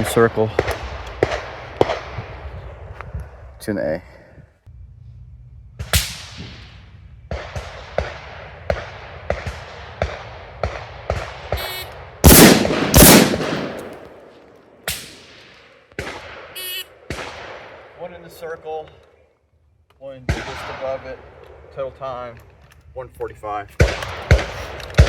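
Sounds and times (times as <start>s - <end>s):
gunshots: 7.3s - 18.0s, 23.8s - 25.0s.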